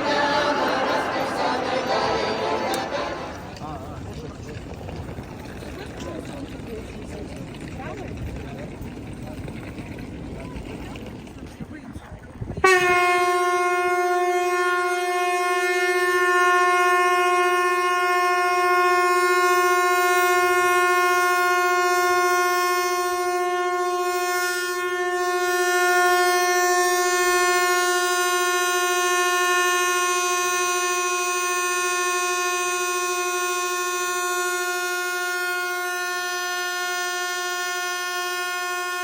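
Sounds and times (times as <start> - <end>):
train horn long blast: 12.6 - 39.0.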